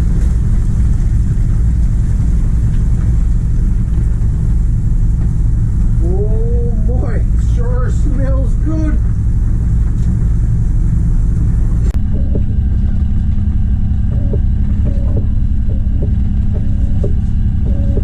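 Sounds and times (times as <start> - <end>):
boat engine rumbling: 0.0 - 18.0
steady hum: 0.0 - 18.0.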